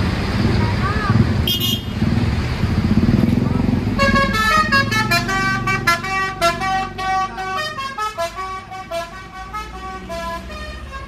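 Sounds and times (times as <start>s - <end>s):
low engine rumble: 0.0s - 11.0s
bus musical horn: 1.4s - 2.0s, 3.9s - 11.0s.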